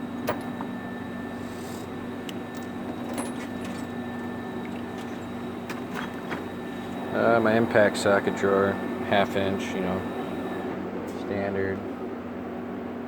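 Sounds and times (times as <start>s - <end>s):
steady hum: 0.0s - 13.0s
metal tools clicking and rattling: 0.3s - 0.7s, 2.3s - 3.9s.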